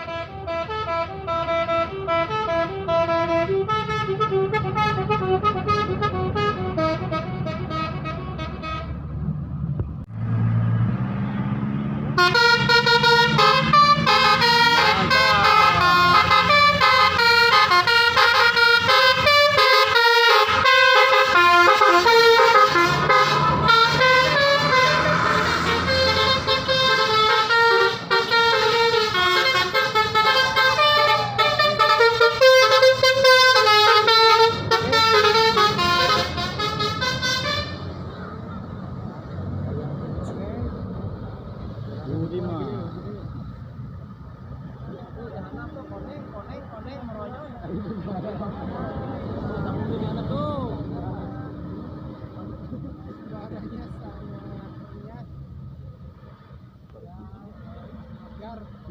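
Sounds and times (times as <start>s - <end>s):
musical air horn tune: 0.0s - 8.9s, 12.2s - 37.9s
bus engine running: 0.0s - 58.9s.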